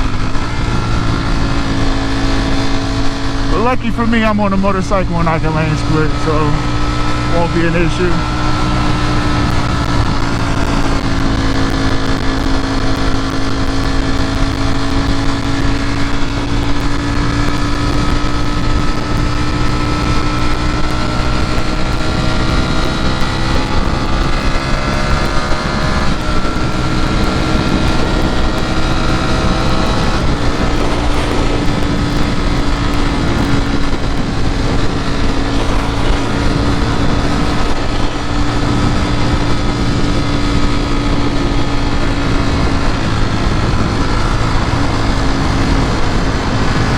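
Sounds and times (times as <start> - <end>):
motorcycle engine running: 0.0 - 46.9
wind rushing: 0.0 - 46.9.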